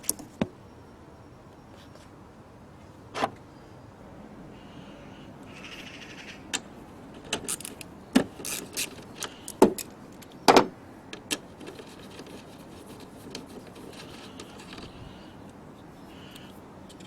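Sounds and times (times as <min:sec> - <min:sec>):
metal tools clicking and knocking: 0:07.1 - 0:15.6.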